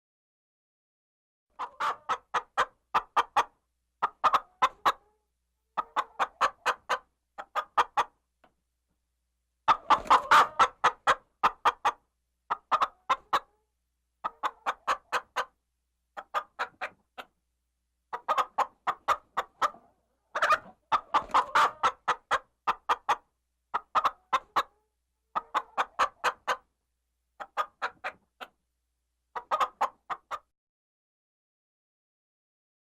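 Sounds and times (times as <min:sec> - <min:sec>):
chicken clucking: 0:01.5 - 0:08.2, 0:09.6 - 0:17.4, 0:18.1 - 0:26.7, 0:27.3 - 0:28.6, 0:29.3 - 0:30.5.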